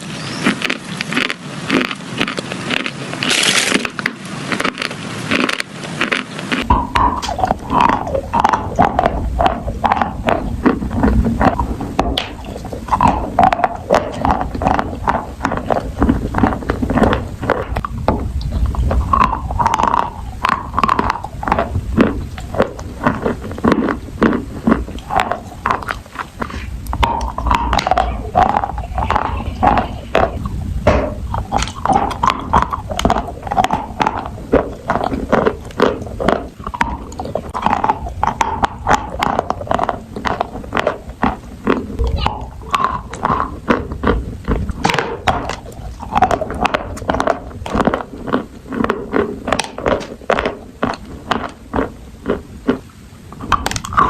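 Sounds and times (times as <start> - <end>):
chewing and crunching food: 0.0 - 54.0
wet mouth sounds: 0.0 - 54.0.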